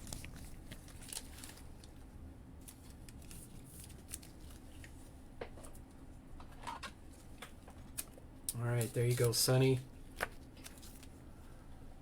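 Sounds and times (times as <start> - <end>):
low room hum: 0.0 - 12.0
trading cards clicking and rustling: 7.8 - 11.1.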